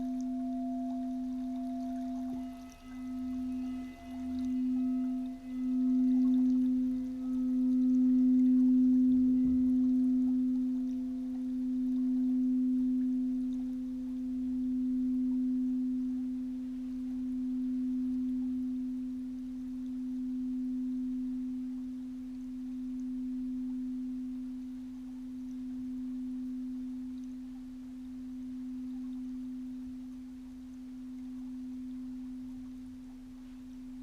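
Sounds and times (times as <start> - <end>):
singing bowl ringing: 0.0 - 27.2.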